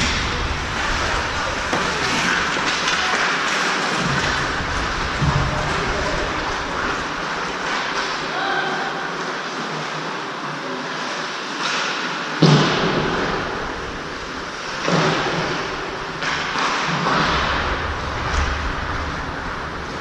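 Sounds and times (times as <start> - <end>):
rink noise: 0.0 - 8.4.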